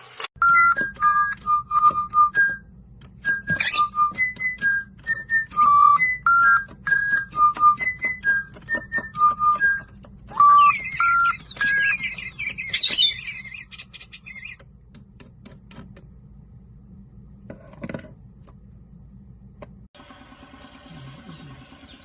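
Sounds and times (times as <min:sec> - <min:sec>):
pet bird whistling: 0:03.2 - 0:14.6
bird chirps: 0:03.4 - 0:04.2, 0:08.4 - 0:14.6, 0:20.0 - 0:22.0.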